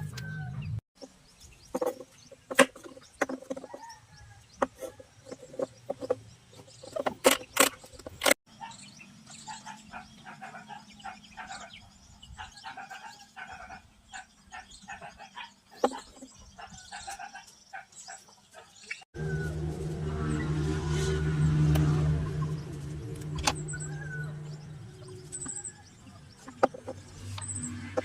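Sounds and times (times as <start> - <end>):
animal and bird calls: 0.0 - 28.0
low motor hum: 19.2 - 28.0.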